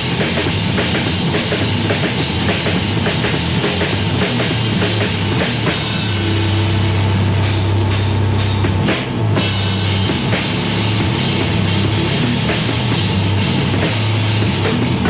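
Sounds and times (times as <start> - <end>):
heavy metal music: 0.0 - 15.0.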